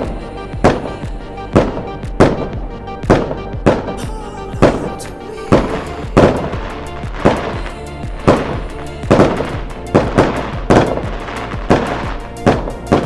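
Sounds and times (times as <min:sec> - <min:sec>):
music with heavy beat: 0:00.0 - 0:13.0.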